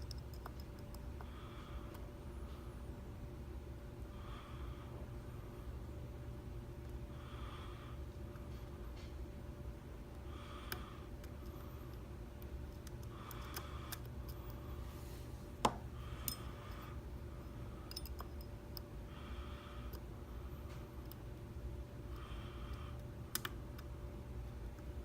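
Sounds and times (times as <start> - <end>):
lock picks clicking and scraping: 0.0 - 1.0, 17.9 - 18.9.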